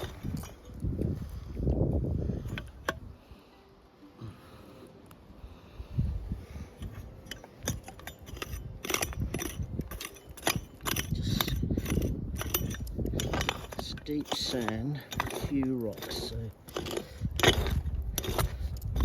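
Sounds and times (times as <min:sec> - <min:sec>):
metal clinking on rock: 0:00.0 - 0:00.9, 0:06.7 - 0:19.0
pick scraping sand and stones: 0:00.0 - 0:03.1, 0:06.4 - 0:19.0.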